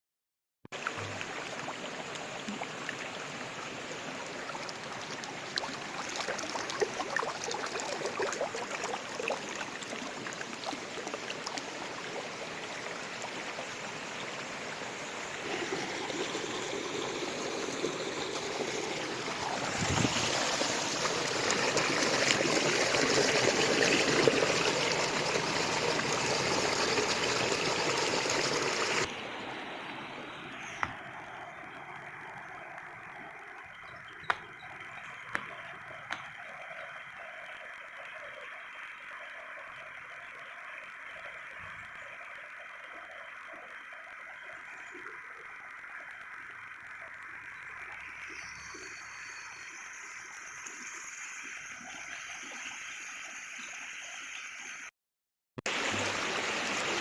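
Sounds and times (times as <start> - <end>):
water rushing over stones: 0.8 - 37.4, 55.7 - 57.0.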